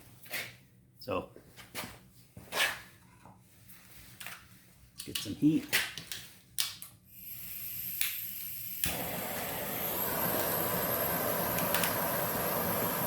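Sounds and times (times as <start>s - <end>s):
gas torch flame hissing: 7.1s - 13.0s
gas torch igniter clicks: 7.5s - 13.0s.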